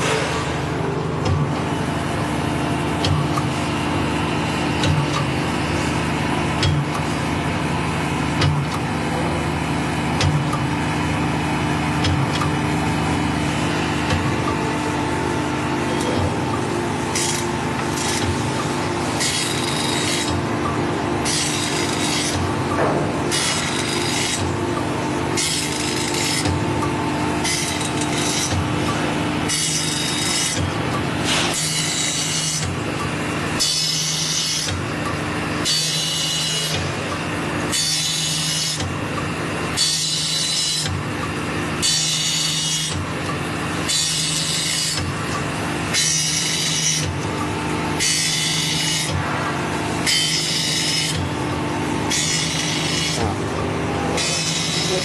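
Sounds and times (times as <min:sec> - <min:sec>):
grinding machine motor hum: 0:00.0 - 0:55.0
grinding wheel hissing on blade: 0:54.2 - 0:55.0.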